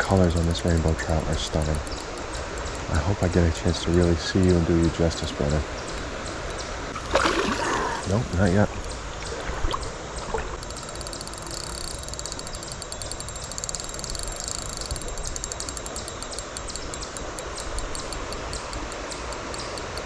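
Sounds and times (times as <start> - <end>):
river water rushing: 7.0 - 10.5
insects chirping: 7.0 - 19.8.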